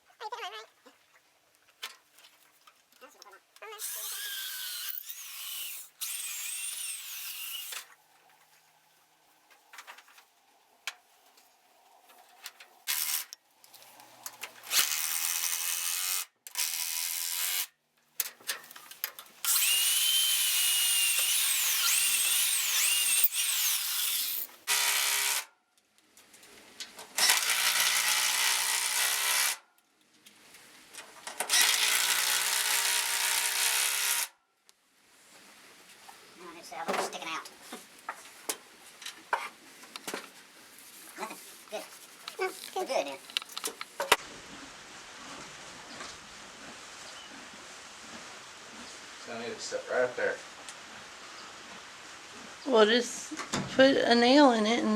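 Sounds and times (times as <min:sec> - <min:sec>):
power drill driving screws into wood: 0:03.8 - 0:07.8, 0:12.9 - 0:13.3, 0:14.7 - 0:17.7, 0:19.4 - 0:25.5, 0:27.2 - 0:29.6, 0:31.4 - 0:34.3.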